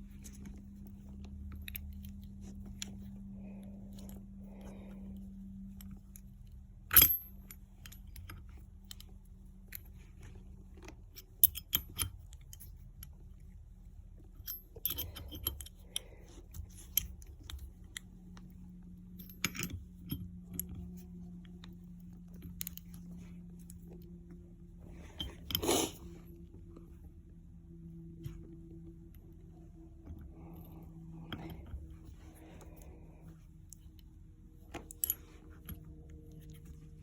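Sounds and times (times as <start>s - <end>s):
faint steady hum: 0.0s - 37.0s
metallic clicks of hand tools: 14.4s - 16.1s.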